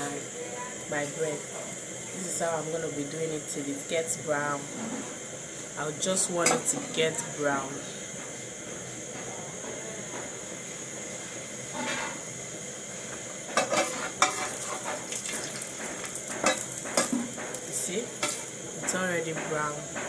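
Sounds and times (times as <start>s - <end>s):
bread sizzling in hot oil: 0.0s - 9.6s, 10.3s - 20.0s
utensil scraping a pan: 11.7s - 12.2s, 13.6s - 19.0s.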